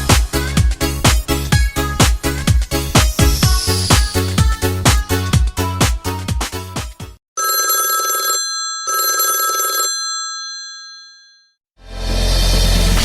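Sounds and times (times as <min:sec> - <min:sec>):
telephone bell ringtone: 0:07.4 - 0:11.6.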